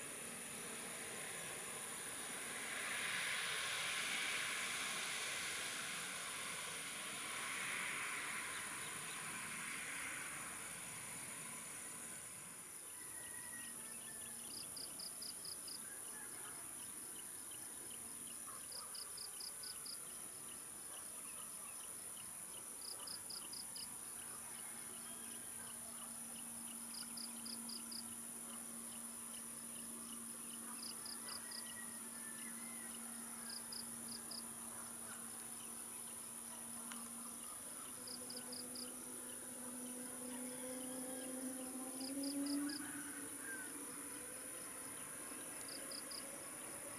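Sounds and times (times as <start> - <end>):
distant airliner engines droning: 0.0 - 13.2, 23.8 - 46.9
steady high-pitched whine: 0.0 - 18.4, 22.3 - 46.9
insects chirping: 25.0 - 46.9.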